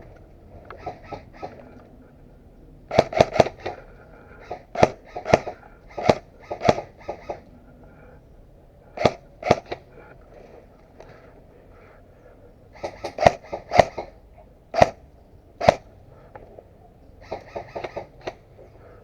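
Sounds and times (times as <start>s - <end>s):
airsoft gun shots: 2.9s - 3.8s, 4.5s - 7.4s, 9.0s - 9.8s, 12.8s - 15.0s, 15.6s - 15.9s.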